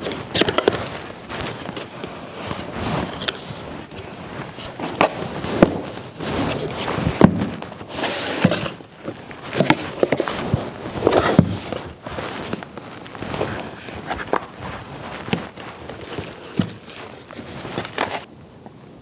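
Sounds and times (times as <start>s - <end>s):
packaging rustling: 0.0s - 18.3s
cardboard box knocks and clatter: 4.8s - 18.3s.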